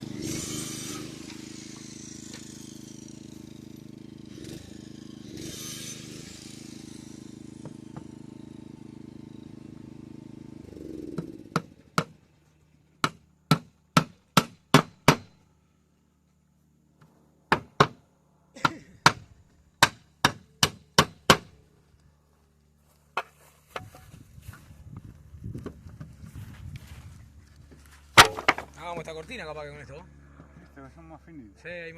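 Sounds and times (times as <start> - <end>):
motor running: 0.0 - 13.0
sharp blows on wood: 13.0 - 15.4, 17.5 - 18.0, 18.6 - 21.6.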